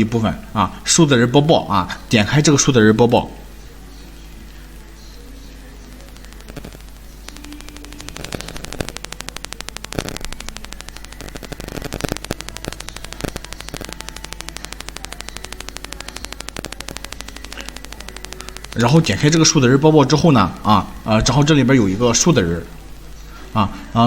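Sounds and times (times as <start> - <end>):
crackling interference ticks: 0.0 - 24.0
electrical mains hum: 0.0 - 24.0.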